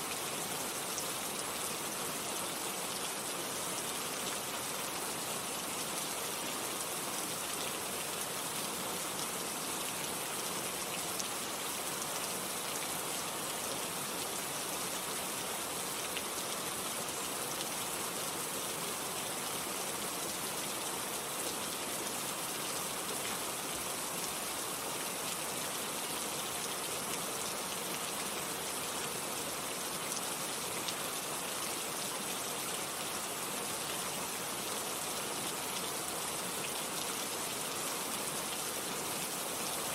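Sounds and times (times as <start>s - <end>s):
heavy rain on foliage: 0.0s - 39.9s.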